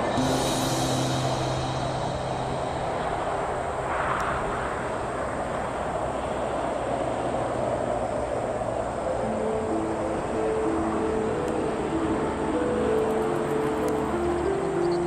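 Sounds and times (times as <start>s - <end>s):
jet engines running: 0.0s - 6.4s.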